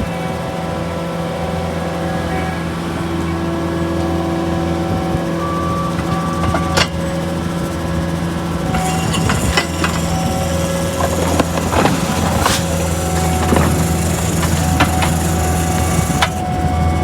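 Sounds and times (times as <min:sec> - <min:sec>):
auger engine running: 0:02.6 - 0:17.0
drill bit knocking on rock: 0:08.7 - 0:16.4.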